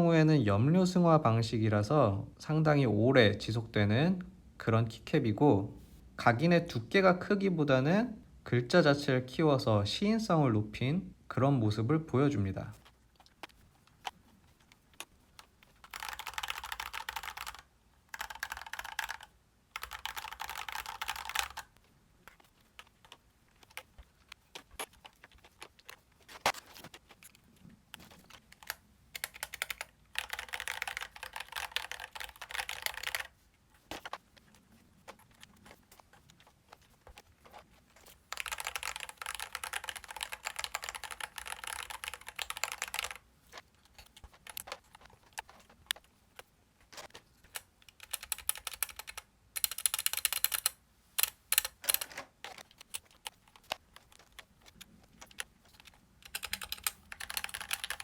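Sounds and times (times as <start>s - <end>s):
mechanical keyboard typing: 14.9s - 26.5s, 28.0s - 33.3s, 35.1s - 58.0s.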